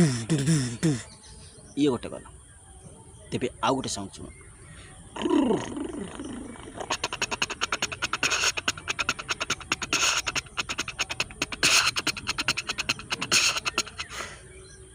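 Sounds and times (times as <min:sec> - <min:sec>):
breathy mouth hiss: 0:00.0 - 0:01.1, 0:05.2 - 0:14.6
tongue clicks rattle: 0:05.2 - 0:14.3.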